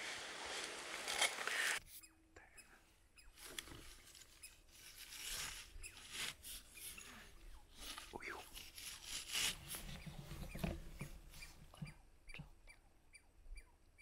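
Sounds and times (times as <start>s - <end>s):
rustling and crackling: 0.0s - 2.0s, 3.4s - 11.9s.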